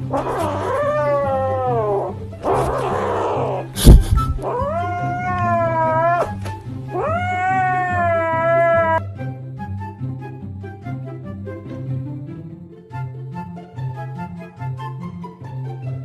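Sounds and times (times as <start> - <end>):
cat meowing: 0.0 - 9.0
background music: 0.0 - 16.0
breathy noise: 1.6 - 9.0
sharp knock: 3.8 - 4.4.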